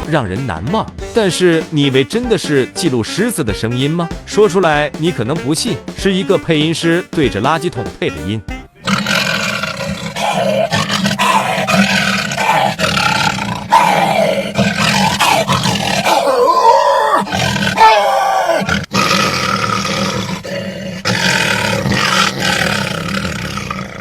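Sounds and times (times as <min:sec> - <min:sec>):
man roaring into a trash can: 0:08.8 - 0:24.0.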